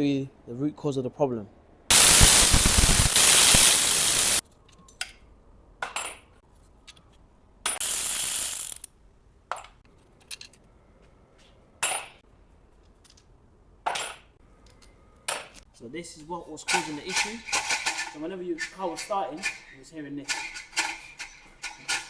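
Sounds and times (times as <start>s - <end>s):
power tool bursts: 1.9s - 4.4s, 7.8s - 8.9s.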